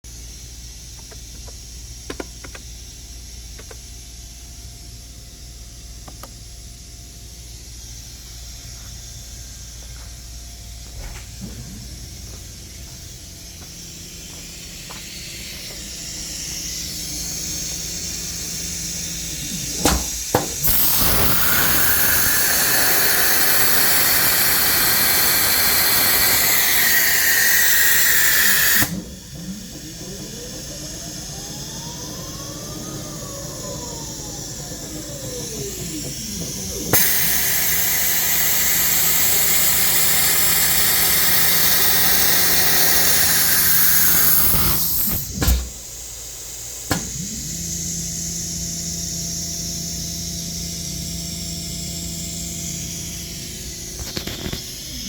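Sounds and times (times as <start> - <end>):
compressed air blast: 13.8 - 29.8, 36.9 - 47.5.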